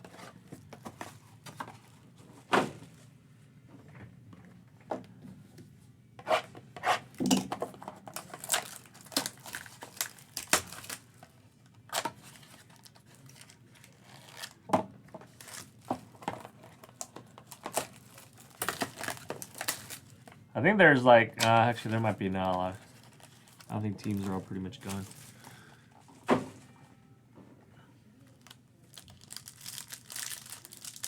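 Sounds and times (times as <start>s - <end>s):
plastic wrapping tearing and crinkling: 8.0s - 11.3s, 11.9s - 20.4s, 21.4s - 25.6s, 28.4s - 31.0s.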